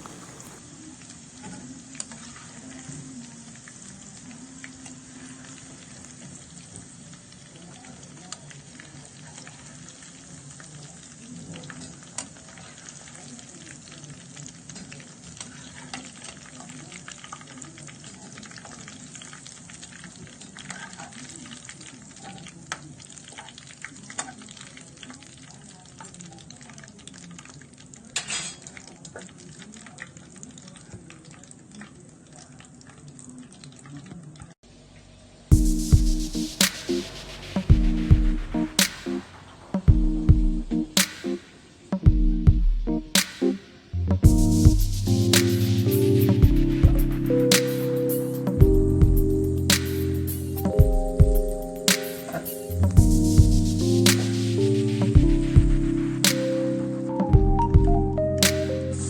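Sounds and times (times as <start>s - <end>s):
food sizzling in hot oil: 0.0s - 33.8s, 53.8s - 56.2s.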